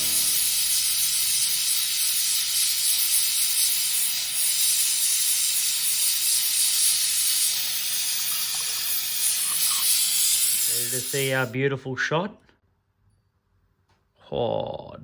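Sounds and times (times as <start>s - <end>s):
torch flame hissing: 0.0s - 11.6s.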